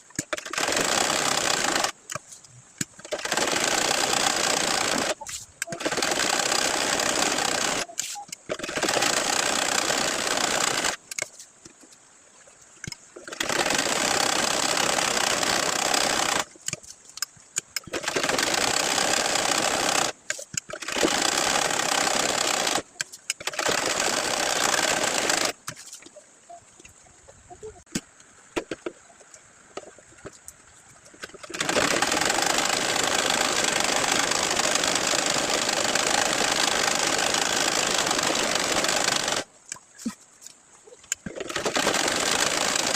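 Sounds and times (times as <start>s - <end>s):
sewing machine stitching: 0.2s - 2.2s, 2.9s - 11.3s, 13.2s - 16.5s, 17.8s - 25.8s, 31.2s - 39.5s, 41.2s - 42.9s.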